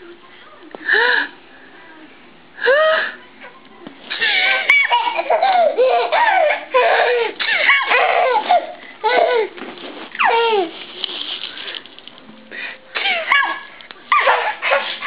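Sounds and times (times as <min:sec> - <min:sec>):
baby laughing and squealing: 0:04.1 - 0:09.5, 0:10.1 - 0:10.8, 0:13.0 - 0:15.0.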